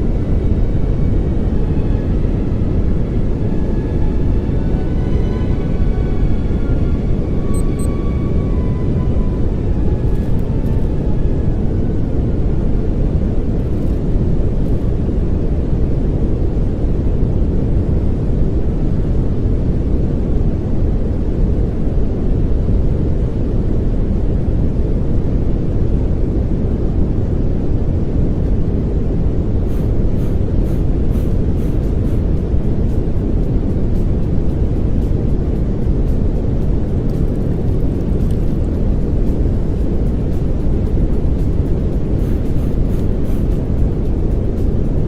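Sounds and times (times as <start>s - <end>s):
faint held tones: 7.5s - 8.0s
steady pink noise hiss: 12.2s - 45.0s.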